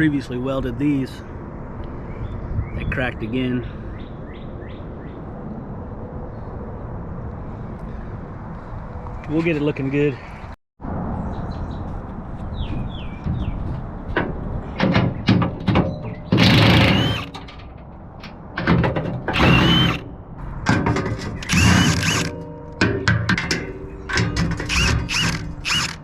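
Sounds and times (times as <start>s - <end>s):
metal knocks: 13.2s - 20.0s, 20.6s - 25.6s
power tool whining: 16.4s - 17.4s, 19.3s - 20.0s, 21.4s - 22.3s, 24.6s - 26.0s.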